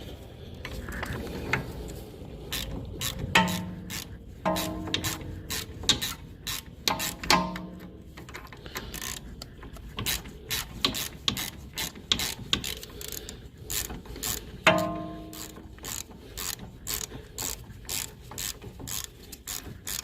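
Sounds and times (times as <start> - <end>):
ratchet wrench clicking: 2.5 - 20.0
ringing metal clanks: 3.3 - 5.6, 6.9 - 8.0, 14.6 - 15.9.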